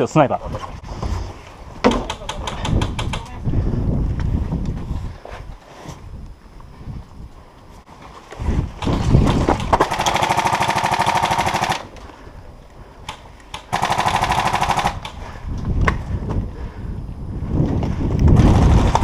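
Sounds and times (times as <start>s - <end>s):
airsoft gun firing bursts: 8.9s - 11.9s, 13.5s - 15.2s, 18.4s - 19.0s.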